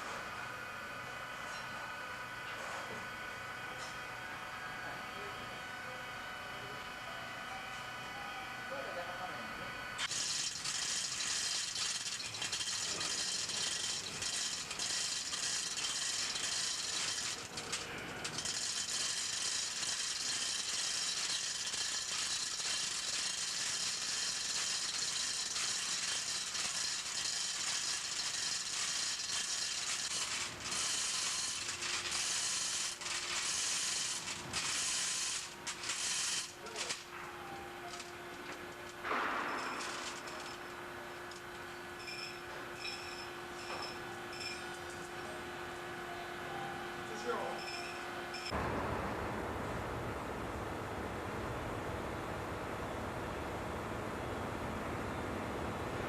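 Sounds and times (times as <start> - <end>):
power tool rattling: 10.0 - 37.1, 37.8 - 41.5.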